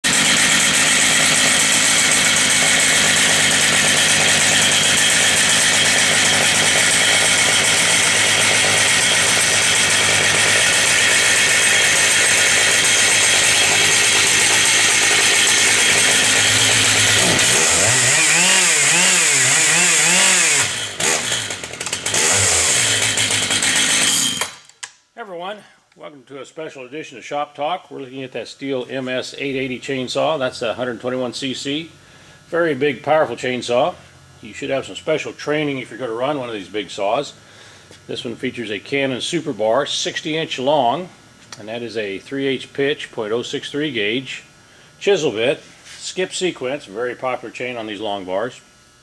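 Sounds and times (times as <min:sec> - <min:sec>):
chainsaw revving: 0:00.0 - 0:24.7.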